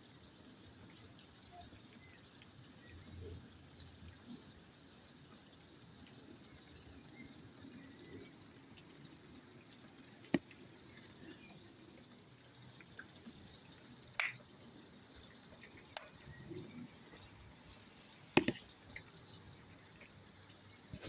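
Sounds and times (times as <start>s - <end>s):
water drops ticking: 0.6s - 20.8s.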